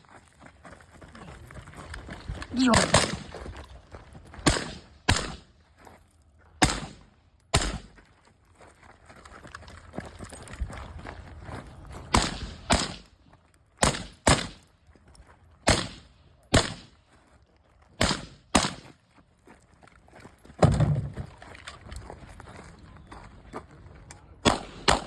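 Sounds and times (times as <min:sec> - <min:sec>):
suppressed rifle shots: 0:24.5 - 0:25.0.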